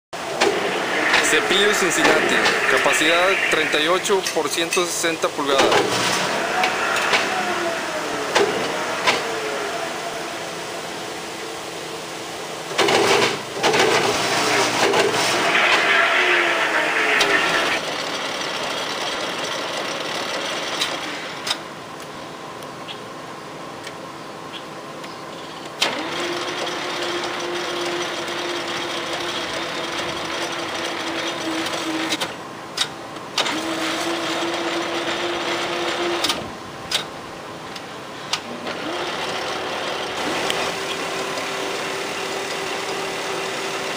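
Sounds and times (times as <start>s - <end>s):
steady humming tone: 0.2s - 18.0s
metal planer running: 0.2s - 21.4s, 25.8s - 32.4s, 33.4s - 36.4s, 38.4s - 43.9s.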